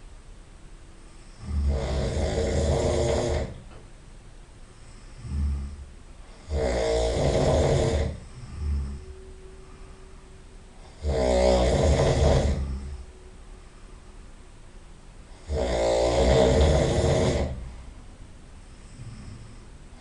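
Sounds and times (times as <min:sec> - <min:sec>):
person snoring heavily: 0:01.1 - 0:03.6, 0:04.8 - 0:09.1, 0:10.8 - 0:13.1, 0:15.3 - 0:17.9, 0:18.7 - 0:20.0
soft breath sound: 0:07.9 - 0:11.0, 0:12.1 - 0:15.4, 0:16.6 - 0:20.0.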